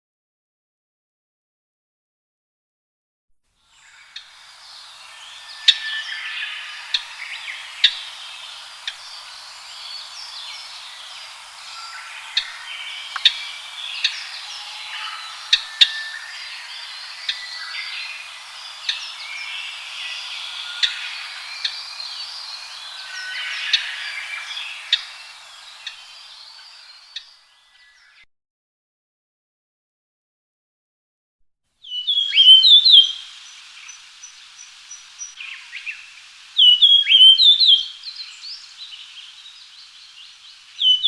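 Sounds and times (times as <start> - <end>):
birds chirping and whistling: 3.8 - 28.1, 31.9 - 41.0
sharp loud bird notes: 3.8 - 28.1.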